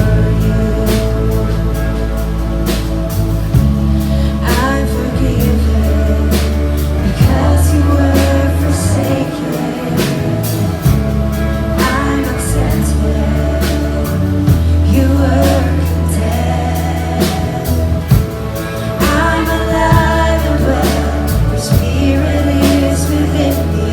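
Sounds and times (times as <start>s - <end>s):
bass line: 0.0s - 23.9s
singing: 0.0s - 23.9s
drum beats: 6.4s - 23.6s.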